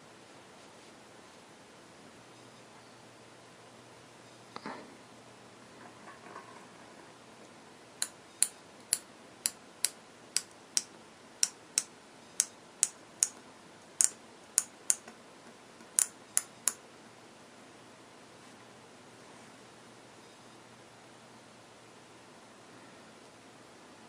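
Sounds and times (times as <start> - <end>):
sharp light clicks: 15.8 - 16.8.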